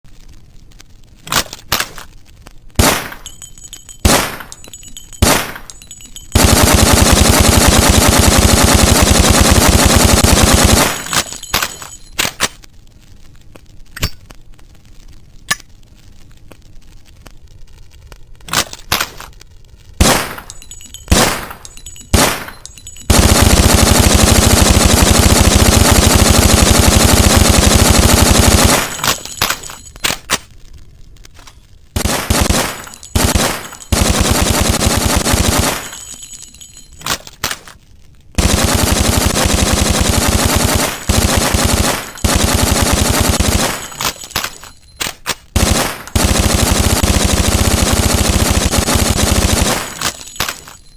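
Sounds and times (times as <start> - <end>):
submachine gun firing: 2.8 - 12.1, 20.0 - 30.2, 32.0 - 36.9, 38.4 - 50.8.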